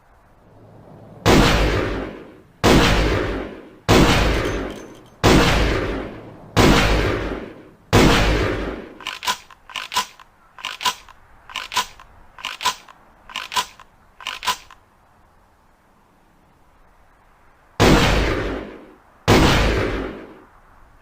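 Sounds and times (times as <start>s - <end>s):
shotgun blast: 1.3s - 10.2s, 17.8s - 20.4s
shotgun action clicks: 9.0s - 14.8s.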